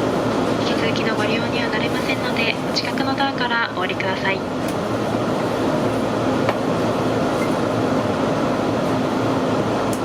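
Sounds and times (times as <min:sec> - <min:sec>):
railcar machinery hum: 0:00.0 - 0:10.0.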